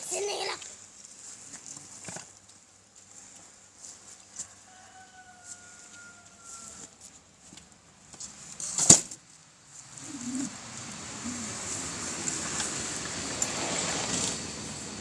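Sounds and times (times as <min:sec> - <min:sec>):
distant rooster crowing: 0:04.3 - 0:07.0.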